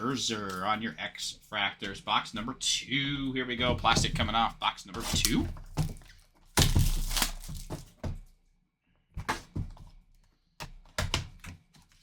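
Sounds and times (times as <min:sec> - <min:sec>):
plastic wrap crinkling and tearing: 0:05.0 - 0:08.0.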